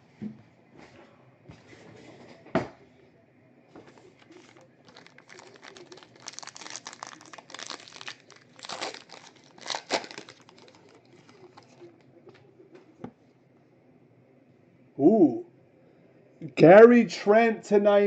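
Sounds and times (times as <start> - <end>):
plastic wrapping crinkling: 3.9 - 12.0
plastic wrapping ripping: 4.3 - 12.0.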